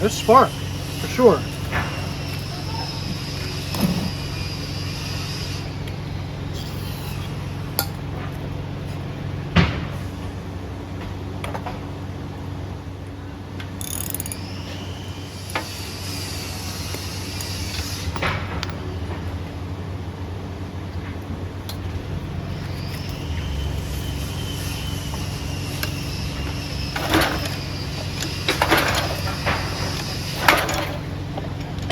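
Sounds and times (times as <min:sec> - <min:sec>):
steady low hum: 0:00.0 - 0:31.9
metal parts and tools clicking: 0:13.8 - 0:14.6.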